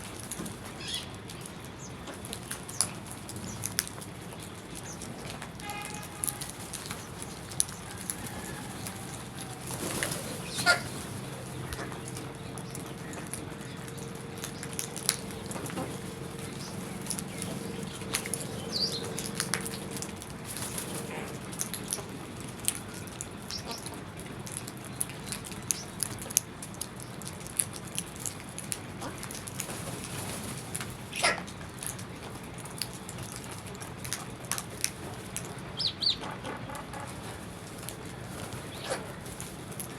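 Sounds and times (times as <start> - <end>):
wing flutters: 5.1 - 23.2
crows calling: 5.7 - 22.0
steady low hum: 6.4 - 25.2.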